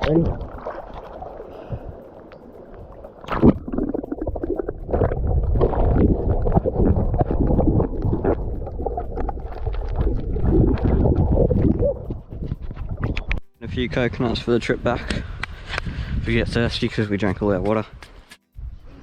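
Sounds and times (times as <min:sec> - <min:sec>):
seawater sloshing: 0:00.0 - 0:12.8
wind rumble on microphone: 0:02.8 - 0:19.0.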